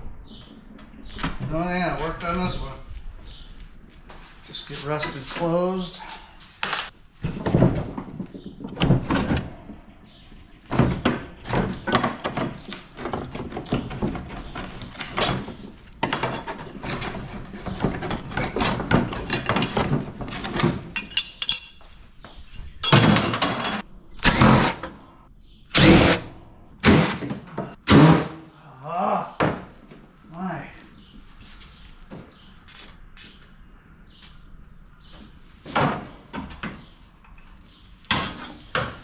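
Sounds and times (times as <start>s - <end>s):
sheet metal clattering and knocking: 7.2s - 9.9s, 10.7s - 21.8s, 22.7s - 23.9s.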